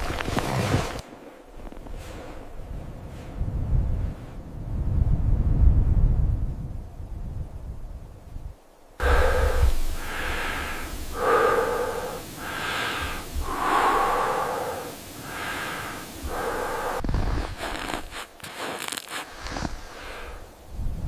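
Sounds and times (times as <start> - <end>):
heavy rapid breathing: 9.0 - 18.2.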